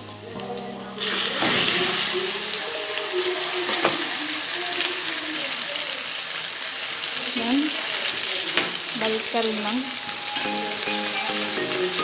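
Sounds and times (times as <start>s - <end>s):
chicken sizzling in hot oil: 0.0s - 12.0s.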